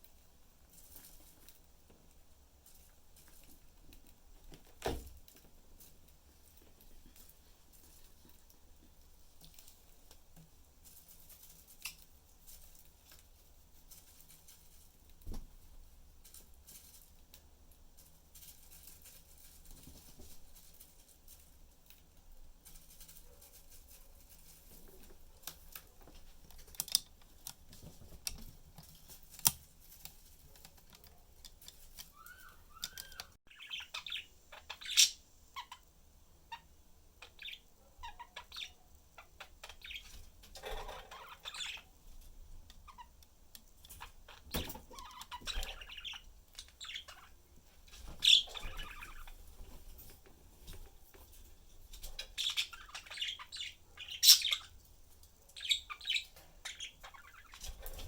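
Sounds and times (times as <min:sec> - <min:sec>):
budgerigars chirping: 0:32.1 - 0:35.8, 0:37.2 - 0:40.1, 0:40.8 - 0:41.9, 0:44.3 - 0:47.4, 0:48.2 - 0:49.3, 0:52.2 - 0:54.8, 0:55.6 - 0:57.6.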